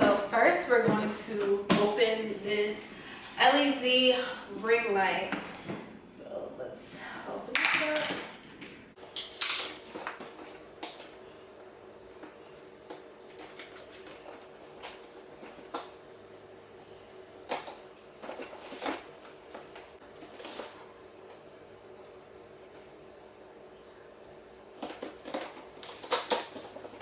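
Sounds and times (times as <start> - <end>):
packaging clicks and rustles: 24.8 - 27.0.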